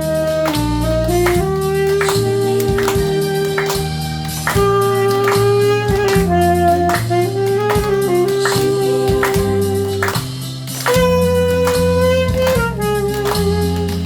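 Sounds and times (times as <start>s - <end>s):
bass: 0.0s - 14.0s
saxophone playing slow melody: 0.0s - 14.0s
steady drum beat: 0.0s - 14.0s.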